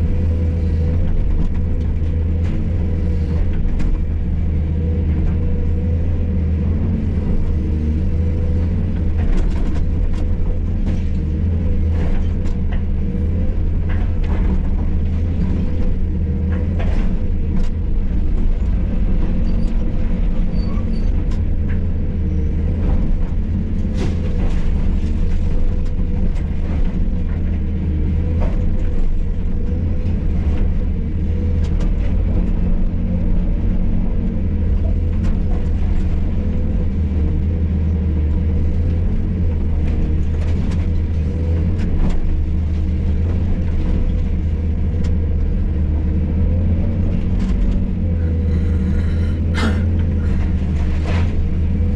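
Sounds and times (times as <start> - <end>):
excavator diesel engine running: 0.0 - 51.9
knocks and clatter of rubble: 8.8 - 37.1.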